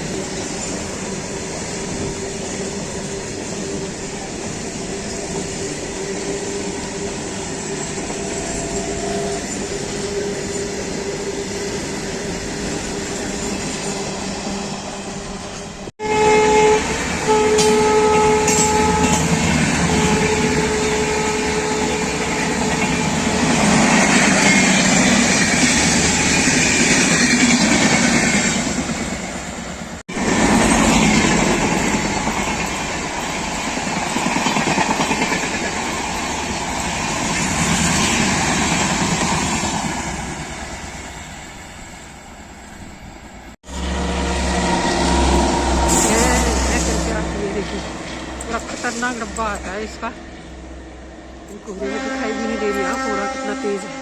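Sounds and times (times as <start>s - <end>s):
passing train noise: 0.0s - 54.0s
train horn: 16.0s - 26.5s, 43.6s - 47.6s, 51.6s - 54.0s.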